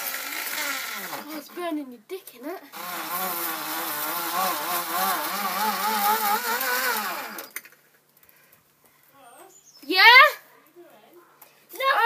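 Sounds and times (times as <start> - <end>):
power tool cutting wood: 0.0 - 1.3, 2.7 - 7.6.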